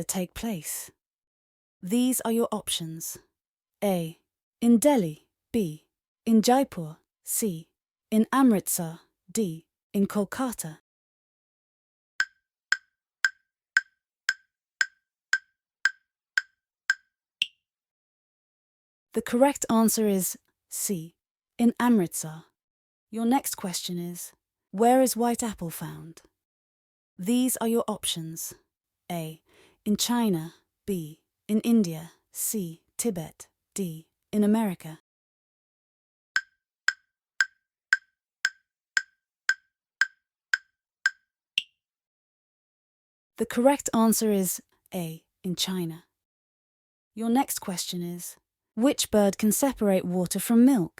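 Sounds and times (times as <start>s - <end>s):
higher-pitched tick: 12.2s - 17.6s
timer ticking: 12.2s - 17.6s, 36.4s - 41.7s.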